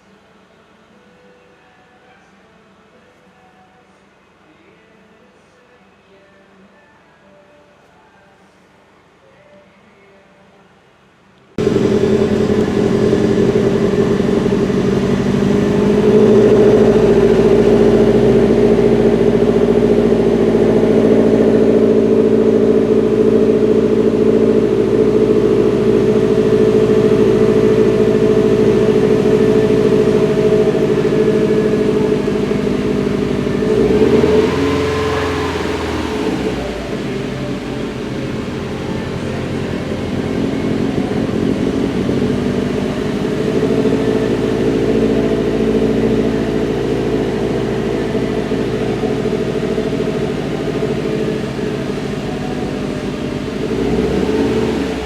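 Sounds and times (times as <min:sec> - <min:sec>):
car engine idling roughly: 0:11.6 - 0:55.0.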